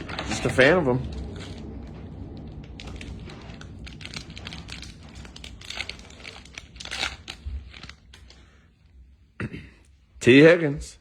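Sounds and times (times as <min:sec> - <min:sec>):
plastic wrappers crinkling and tearing: 0:00.0 - 0:08.7.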